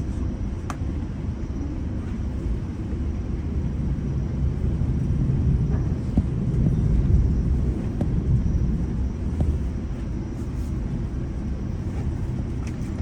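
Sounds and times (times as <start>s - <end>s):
train wheels rumbling on rails: 3.4s - 13.0s.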